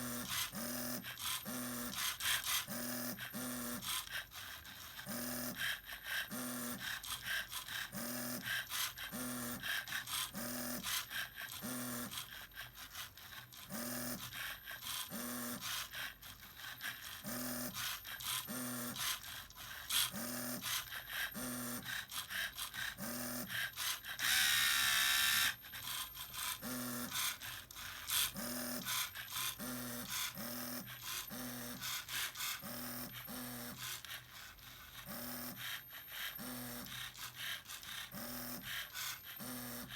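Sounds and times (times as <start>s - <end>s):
electric motors whirring: 21.3s - 39.9s.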